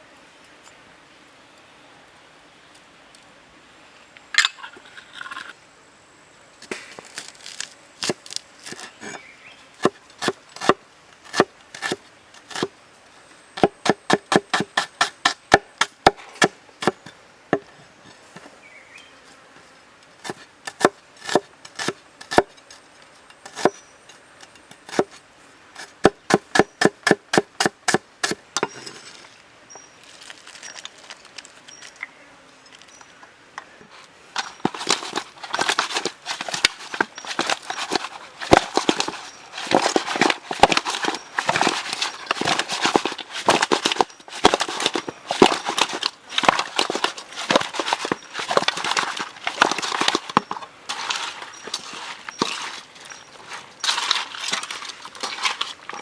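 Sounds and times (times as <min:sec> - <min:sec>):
knife chopping on wooden board: 0:20.2 - 0:22.5, 0:24.9 - 0:25.2, 0:25.8 - 0:28.8.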